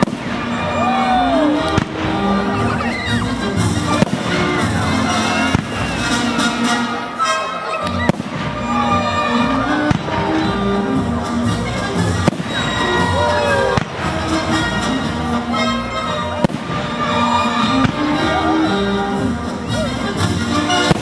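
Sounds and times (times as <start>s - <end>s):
whistling rockets: 0.0s - 1.9s, 5.2s - 6.4s, 7.9s - 9.2s, 12.2s - 14.2s
fireworks bangs: 0.0s - 6.7s, 8.0s - 10.7s, 12.0s - 15.2s, 16.4s - 18.4s, 20.7s - 21.0s
fireworks crackling burst: 0.0s - 7.2s, 8.0s - 15.6s, 16.2s - 21.0s
music: 0.0s - 21.0s.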